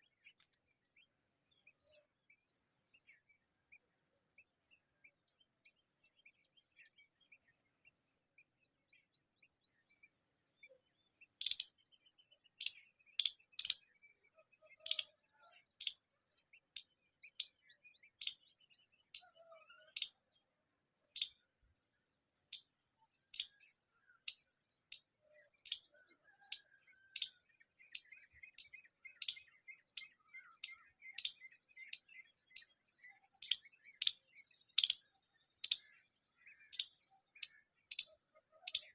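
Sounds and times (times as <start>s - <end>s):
faint chirping: 10.6s - 20.2s, 22.5s - 38.9s.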